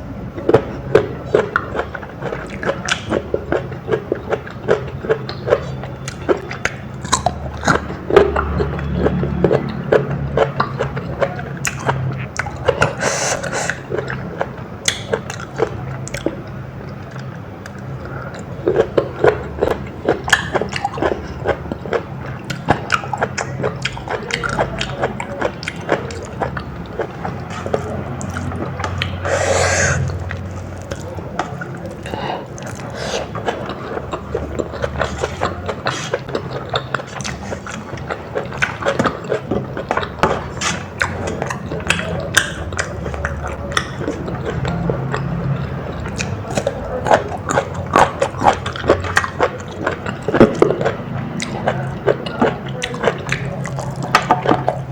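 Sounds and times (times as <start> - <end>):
close-miked chewing: 0.0 - 54.9
low steady hum: 0.0 - 54.9
wet mouth clicks and smacks: 10.4 - 19.0.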